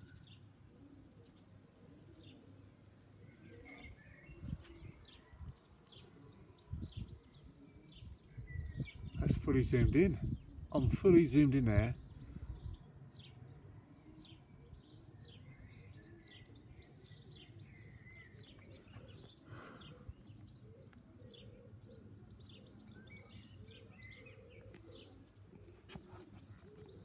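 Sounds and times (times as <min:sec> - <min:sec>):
small birds chirping: 0:00.0 - 0:27.0.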